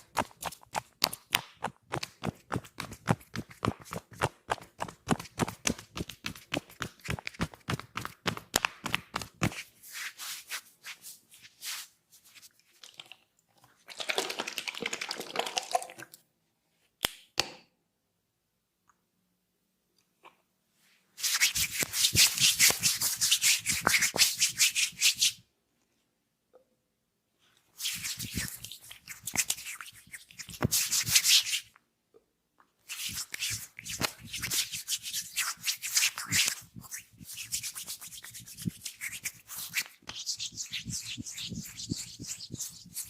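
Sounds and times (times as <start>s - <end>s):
hands rubbing with oil: 0.0s - 12.6s, 21.2s - 25.4s, 27.7s - 31.7s, 32.8s - 43.0s.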